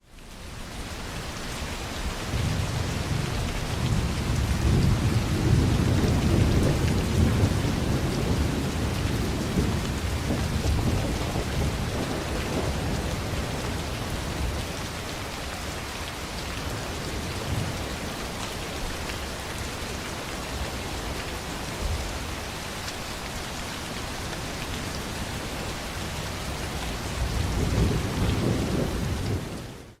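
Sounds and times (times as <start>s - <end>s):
heavy rain falling: 0.0s - 30.0s
low rumble of thunder: 2.1s - 15.2s, 26.0s - 30.0s.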